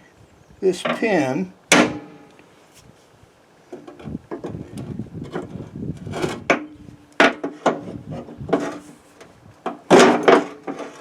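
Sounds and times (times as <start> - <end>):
metal scraping: 4.0 - 9.1, 9.9 - 11.0
metal knocks and clanks: 9.6 - 11.0.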